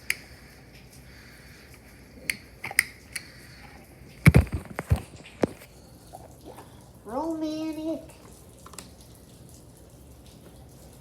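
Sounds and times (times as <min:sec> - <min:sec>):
knocks and thumps: 0:04.2 - 0:05.6.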